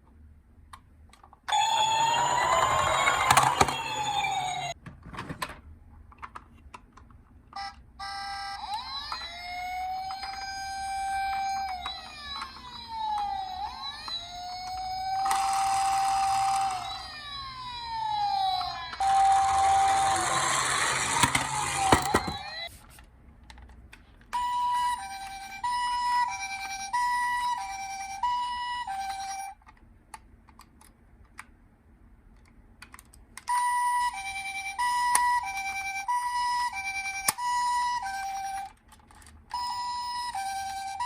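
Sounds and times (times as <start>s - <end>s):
toy siren wailing: 1.5s - 4.8s, 7.6s - 22.7s, 24.4s - 29.6s, 33.5s - 38.7s, 39.5s - 41.0s.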